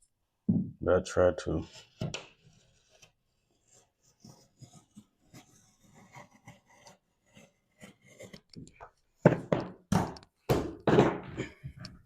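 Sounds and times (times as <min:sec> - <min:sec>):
knife scoring drywall paper: 0:01.6 - 0:08.6.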